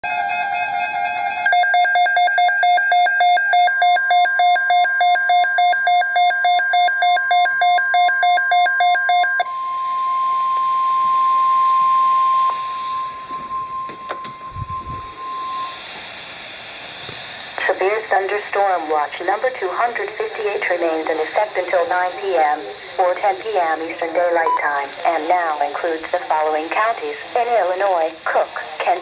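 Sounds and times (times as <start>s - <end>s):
steady warning alarm tone: 0.0s - 16.0s
radio hiss: 12.4s - 29.0s.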